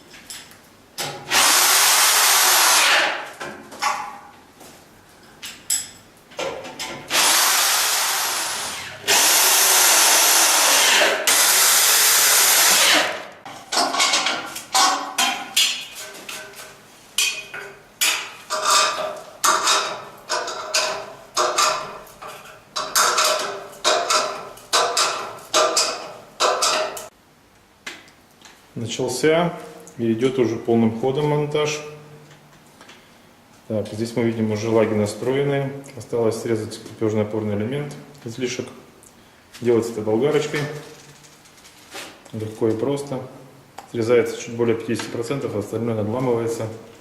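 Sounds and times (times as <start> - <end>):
power drill running: 1.3 - 3.2, 7.1 - 13.2.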